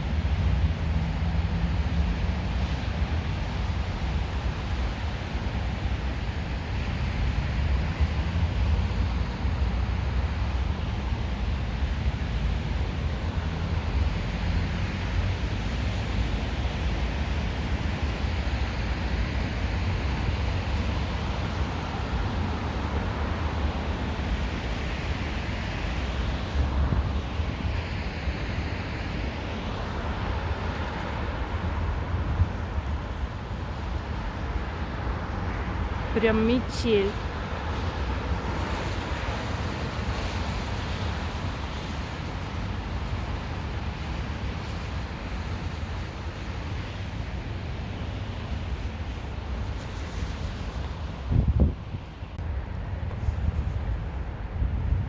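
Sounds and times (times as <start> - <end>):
wind buffeting microphone: 37.5 - 55.0.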